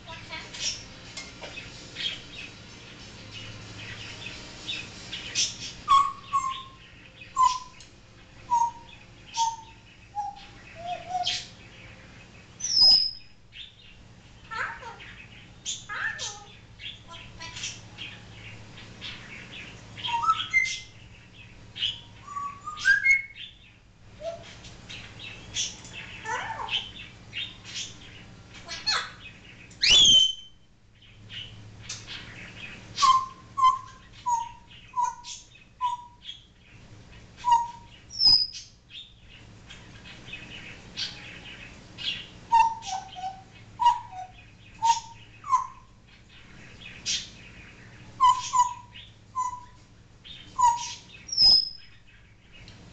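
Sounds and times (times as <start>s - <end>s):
parrot clicking chirping and whistling: 7.4s - 7.9s, 29.7s - 30.5s, 33.0s - 36.3s, 37.4s - 38.7s, 42.5s - 45.9s, 48.2s - 49.8s, 50.6s - 51.8s.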